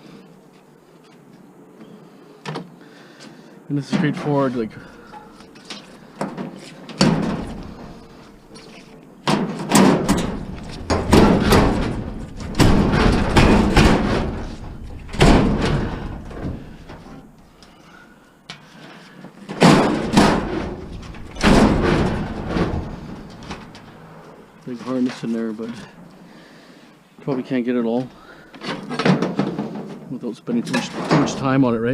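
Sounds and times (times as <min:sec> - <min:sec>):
sheet metal banging and rattling: 0:06.0 - 0:17.6, 0:19.4 - 0:24.6, 0:30.7 - 0:31.9.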